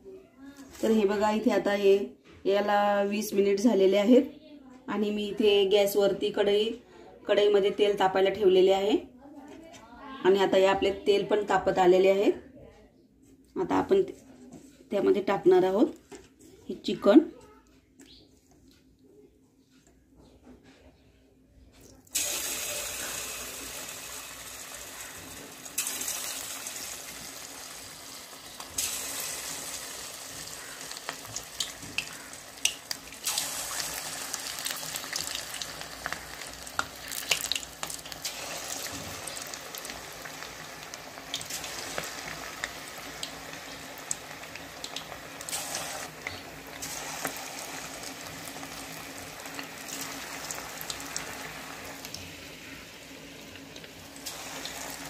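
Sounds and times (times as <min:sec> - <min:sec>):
chicken deep-frying in oil: 0:21.9 - 0:55.0.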